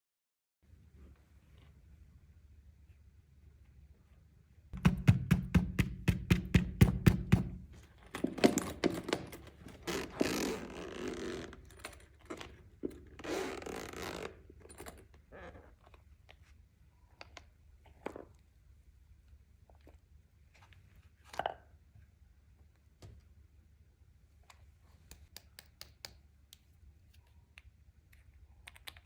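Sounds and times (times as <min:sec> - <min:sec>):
quick knocks: 0:04.8 - 0:09.3.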